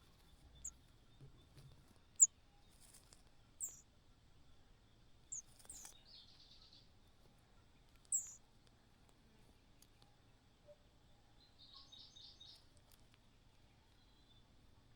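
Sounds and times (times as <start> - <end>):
quick high bird chirps: 3.6 - 3.8, 8.1 - 8.4.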